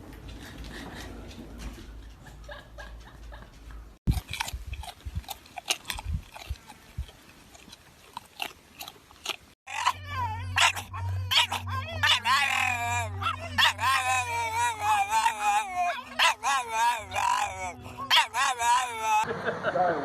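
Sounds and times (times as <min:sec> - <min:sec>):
pet chewing with crunches: 0:04.0 - 0:19.2.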